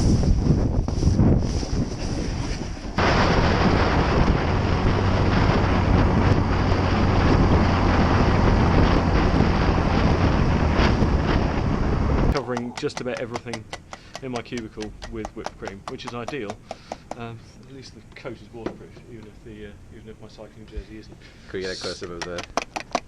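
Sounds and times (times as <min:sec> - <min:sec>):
wind buffeting microphone: 0:00.0 - 0:23.0
loud rushing noise: 0:03.0 - 0:12.4.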